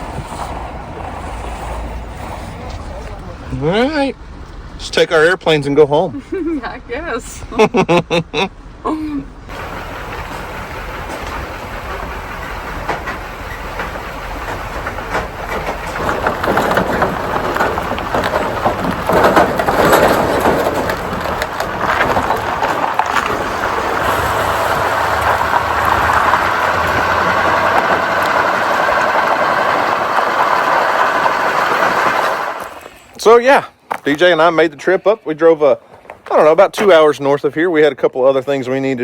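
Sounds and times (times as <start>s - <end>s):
metal rattling and clanking: 9.5s - 33.0s
vehicle engine pulling away: 9.5s - 33.1s.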